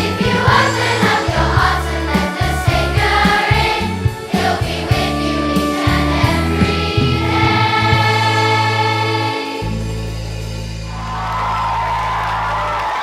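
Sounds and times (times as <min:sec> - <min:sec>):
children's choir singing a carol: 0:00.0 - 0:10.0
instrumental accompaniment: 0:00.0 - 0:11.4.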